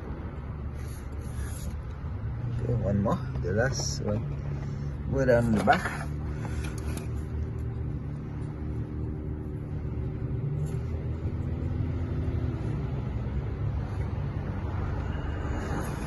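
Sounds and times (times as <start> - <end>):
low mechanical rumble: 0.0 - 16.0.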